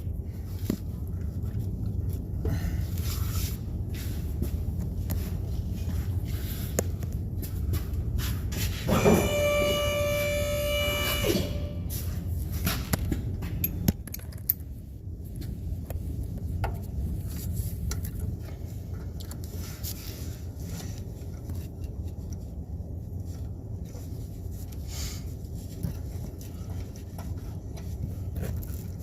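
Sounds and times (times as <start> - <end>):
steady low hum: 0.0 - 29.0
metallic tool clicks and clinks: 13.6 - 14.7.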